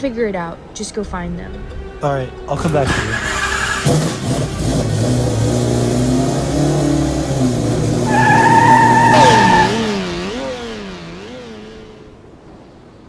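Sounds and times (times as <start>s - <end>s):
car engine running: 3.0s - 12.3s
tyre squeal: 8.0s - 10.8s.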